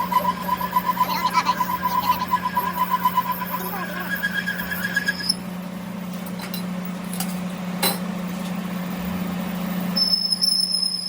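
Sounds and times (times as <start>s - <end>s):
high steady whine: 0.0s - 5.8s
workshop machine humming: 0.0s - 11.0s.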